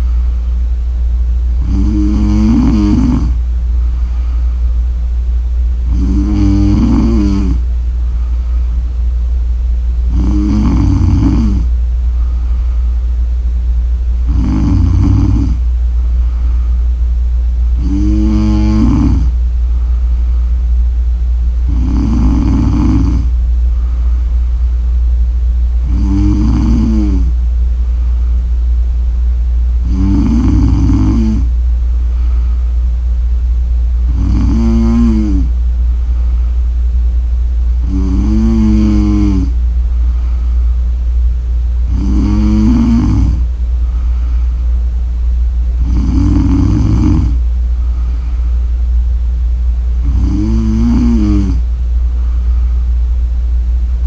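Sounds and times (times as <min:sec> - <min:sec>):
low hum: 0:00.0 - 0:54.0
woman snoring: 0:01.6 - 0:03.4, 0:05.8 - 0:07.7, 0:10.1 - 0:11.8, 0:14.2 - 0:15.7, 0:17.7 - 0:19.4, 0:21.6 - 0:23.4, 0:25.8 - 0:27.4, 0:29.8 - 0:31.6, 0:34.0 - 0:35.6, 0:37.8 - 0:39.6, 0:41.9 - 0:44.1, 0:45.8 - 0:48.4, 0:50.0 - 0:51.7.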